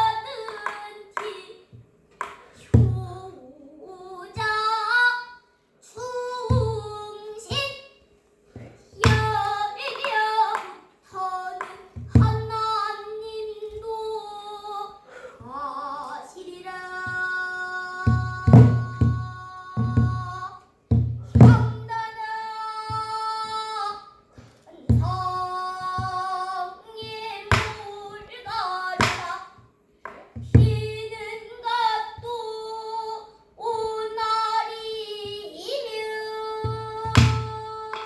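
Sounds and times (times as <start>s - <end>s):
child singing long held notes: 0.0s - 1.6s, 2.6s - 8.0s, 8.6s - 20.7s, 21.3s - 29.6s, 30.5s - 38.0s
barrel drum struck on head: 2.2s - 3.2s, 6.5s - 7.6s, 9.0s - 10.7s, 11.6s - 12.8s, 18.1s - 22.0s, 24.9s - 26.3s, 27.0s - 28.0s, 29.0s - 29.4s, 30.1s - 31.0s, 36.6s - 38.0s
knocks on drum's wooden rim: 9.0s - 10.7s, 11.6s - 12.6s, 18.1s - 20.3s, 20.9s - 21.9s, 27.5s - 27.9s, 29.0s - 29.3s, 36.6s - 38.0s.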